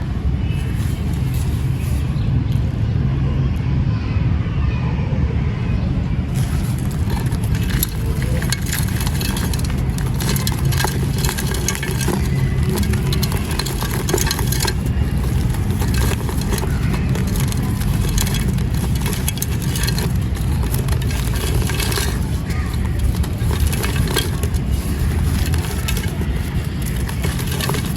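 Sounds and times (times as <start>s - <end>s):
cement crumbling: 6.3s - 27.9s.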